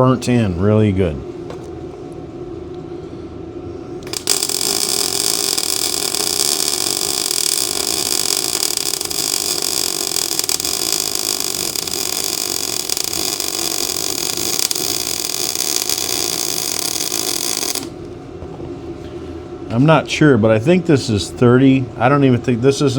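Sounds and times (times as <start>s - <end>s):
welding arc crackling hiss: 4.0s - 18.0s.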